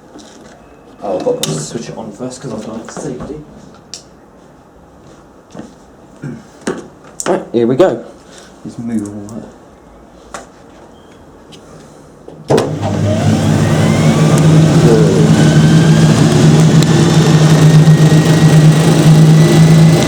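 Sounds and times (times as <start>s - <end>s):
spin dryer motor jolt: 12.5s - 20.0s
spin dryer whine and hum: 12.5s - 20.0s.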